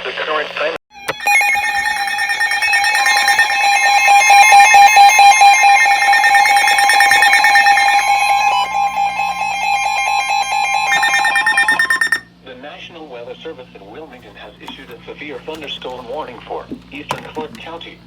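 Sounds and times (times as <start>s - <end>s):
weather radio alert tone: 1.1s - 12.2s.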